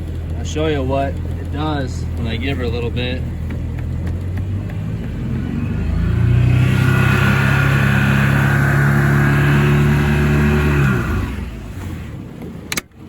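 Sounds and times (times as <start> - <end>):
outboard motor revving: 0.0 - 13.0.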